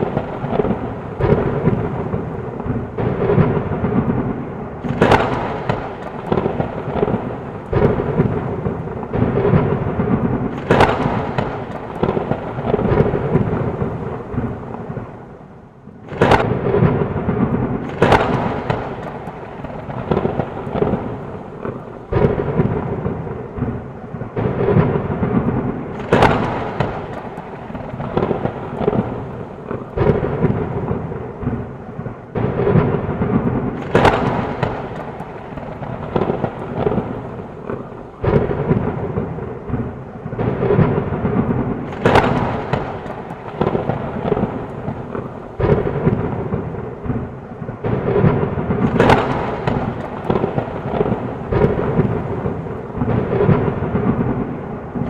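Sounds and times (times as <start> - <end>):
heavy rain: 0.0 - 55.0
low rumble of thunder: 0.0 - 55.0
sharp thunder cracks: 0.0 - 55.0.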